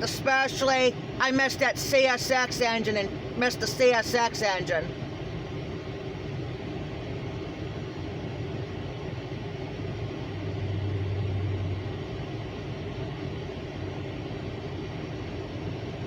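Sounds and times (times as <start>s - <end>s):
low hum: 2.6s - 16.0s
freight cars rolling past: 10.4s - 12.1s.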